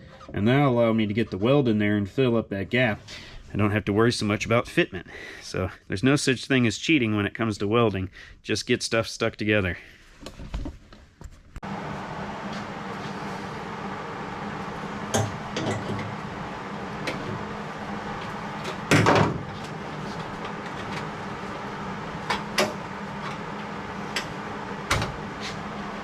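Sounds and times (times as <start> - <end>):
steady shop hum: 11.2 - 26.0.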